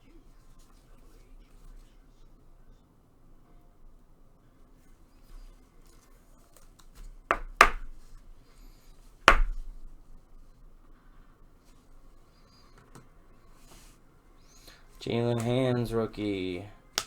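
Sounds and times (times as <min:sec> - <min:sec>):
sharp knocks: 0:07.3 - 0:08.0, 0:09.3 - 0:09.9.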